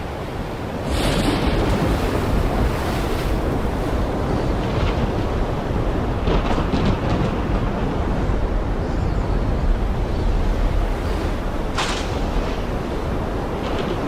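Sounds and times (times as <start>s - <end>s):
heavy rain falling: 3.4s - 8.8s, 9.5s - 14.0s.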